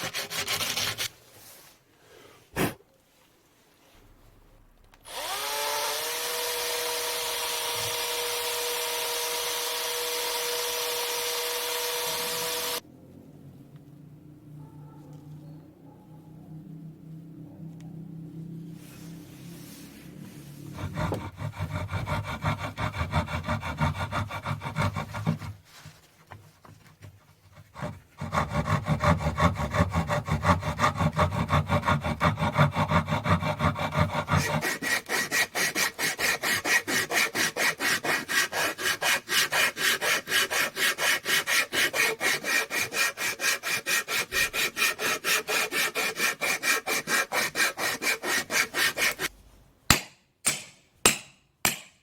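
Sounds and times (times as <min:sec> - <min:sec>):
hand tool rasping wood: 0:00.0 - 0:01.1, 0:20.7 - 0:25.6, 0:27.3 - 0:49.3, 0:49.9 - 0:52.0.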